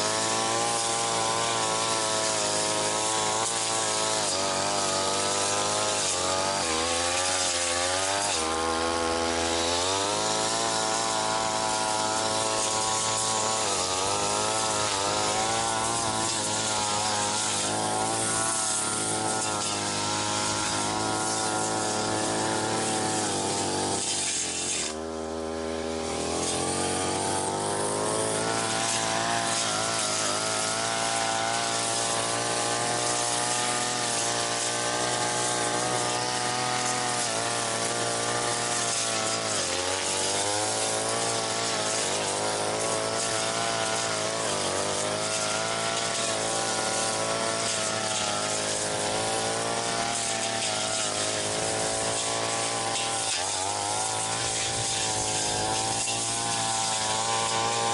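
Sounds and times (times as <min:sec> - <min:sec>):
blade cutting weeds: 0:00.0 - 0:57.9
brush cutter engine running: 0:00.0 - 0:57.9.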